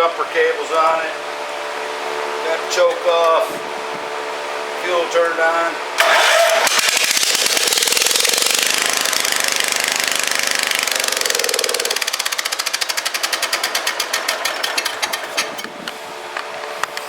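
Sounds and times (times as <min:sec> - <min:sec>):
single-cylinder engine running loud: 0:00.0 - 0:17.0.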